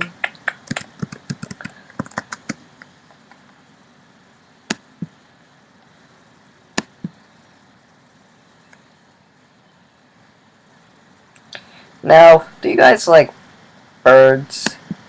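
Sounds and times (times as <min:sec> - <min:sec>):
keyboard typing clicks: 0:00.0 - 0:02.6.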